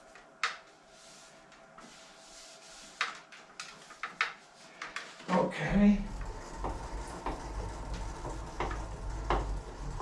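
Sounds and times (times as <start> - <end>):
soft rubbing strokes: 0.0 - 5.4.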